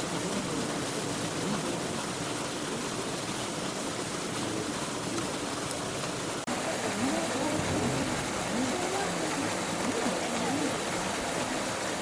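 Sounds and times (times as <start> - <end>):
faint voices: 0.0 - 3.2, 6.5 - 12.0
rushing outdoor noise: 0.0 - 12.0.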